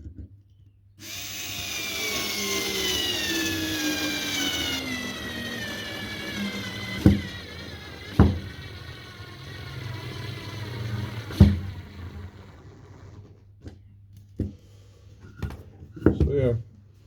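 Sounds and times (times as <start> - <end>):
cordless screwdriver motor whining: 1.0 - 13.4.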